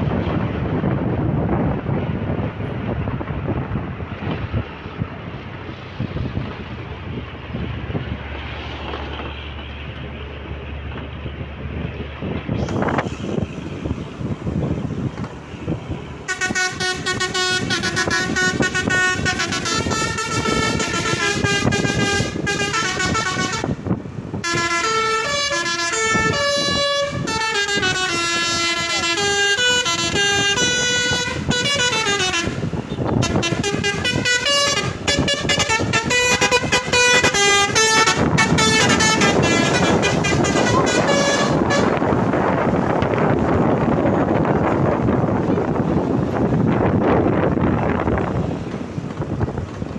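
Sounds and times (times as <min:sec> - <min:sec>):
loud rushing noise: 0:00.0 - 0:29.0
vehicle running noise: 0:00.0 - 0:49.9
wind buffeting microphone: 0:00.0 - 0:49.9
bus air horn melody: 0:16.2 - 0:42.6.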